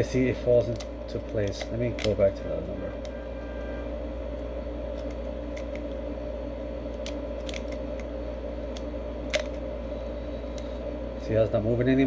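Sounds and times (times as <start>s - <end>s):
steady background hum: 0.0s - 12.0s
combination lock wheels clicking: 0.6s - 2.4s, 6.9s - 8.1s.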